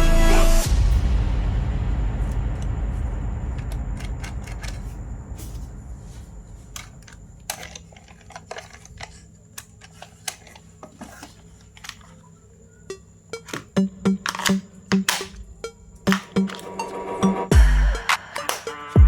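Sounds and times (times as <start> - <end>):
low hum: 0.0 - 8.8.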